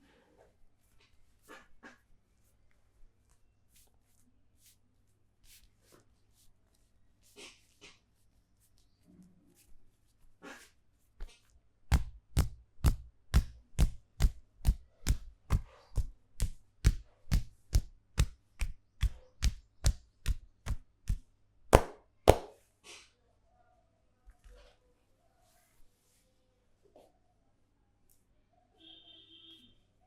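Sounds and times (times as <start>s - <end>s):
hands slapping in massage: 11.2s - 22.5s.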